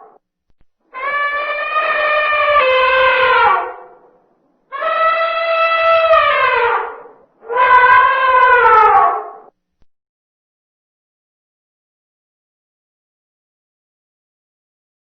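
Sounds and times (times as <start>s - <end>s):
animal horn-like calls: 0.9s - 4.1s, 4.7s - 9.5s.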